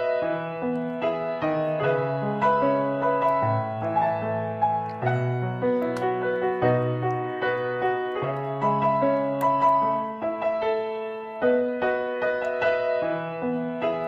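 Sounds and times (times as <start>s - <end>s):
piano music: 0.0s - 14.0s.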